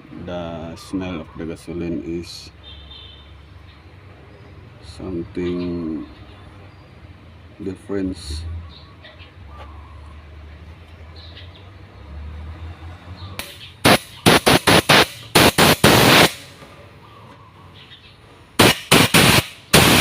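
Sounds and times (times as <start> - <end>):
compressed air blasts from blow gun: 13.4 - 16.6, 18.6 - 20.0.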